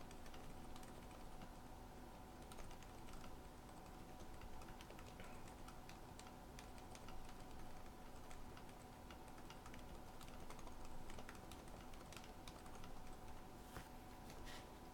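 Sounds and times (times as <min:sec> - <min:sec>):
faint keyboard typing: 0:00.0 - 0:14.6.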